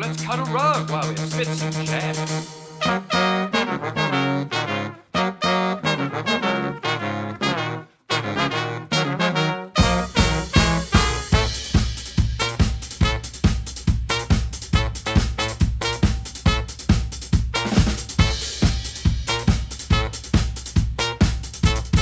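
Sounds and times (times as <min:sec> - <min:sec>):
drum kit beat: 0:00.0 - 0:04.6, 0:09.8 - 0:22.0
brass band playing: 0:00.0 - 0:22.0.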